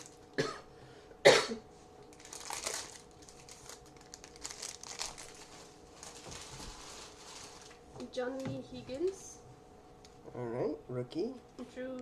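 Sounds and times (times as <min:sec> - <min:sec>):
person coughing: 0:00.4 - 0:01.7.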